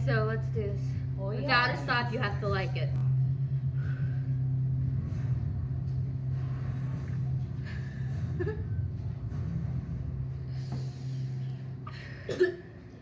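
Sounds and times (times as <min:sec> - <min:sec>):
steady low hum: 0:00.0 - 0:13.0.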